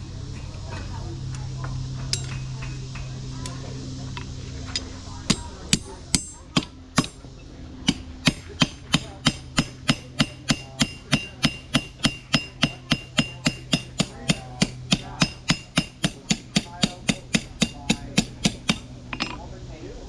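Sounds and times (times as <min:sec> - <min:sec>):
hammer striking iron on anvil: 0:02.1 - 0:03.1, 0:04.7 - 0:19.4.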